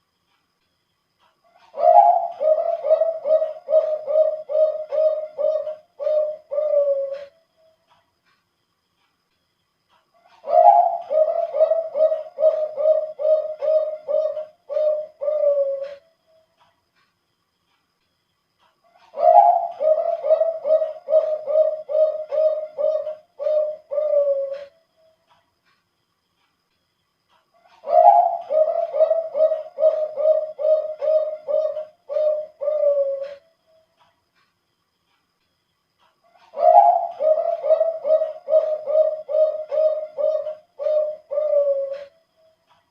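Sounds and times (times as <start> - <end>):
dove cooing song: 1.5 - 7.4, 10.2 - 16.2, 18.9 - 24.8, 27.6 - 33.6, 36.3 - 42.4.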